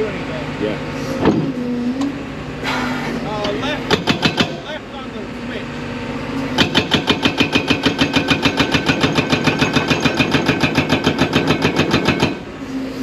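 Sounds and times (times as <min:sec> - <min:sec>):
diesel engine running: 0:00.0 - 0:13.0
hydraulic breaker hammering rock: 0:03.3 - 0:04.8, 0:06.4 - 0:12.6.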